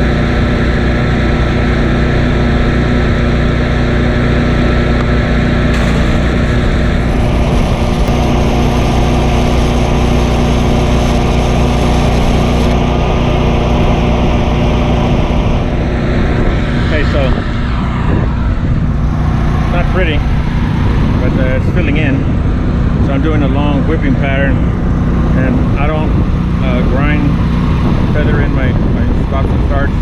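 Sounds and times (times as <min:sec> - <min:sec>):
steady engine drone: 0:00.0 - 0:30.0
stick welding arc crackling: 0:05.7 - 0:12.9.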